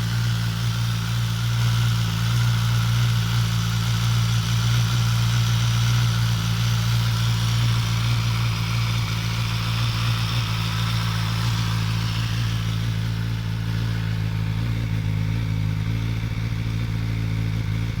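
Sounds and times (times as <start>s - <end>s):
engine rattle: 0.0s - 18.0s
motorcycle engine idling: 0.0s - 18.0s.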